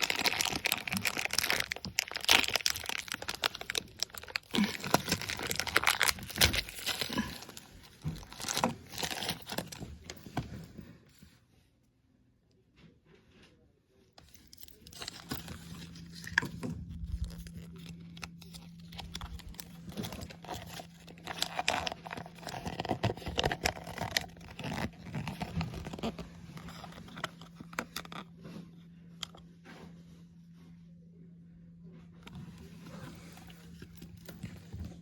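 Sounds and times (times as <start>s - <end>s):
plastic packaging crinkling: 0.0s - 10.3s, 14.3s - 28.3s.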